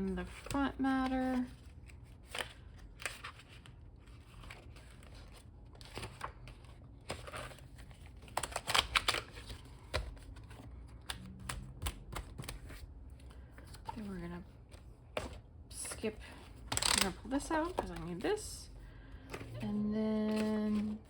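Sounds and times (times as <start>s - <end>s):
paper rustling: 19.4s - 21.0s.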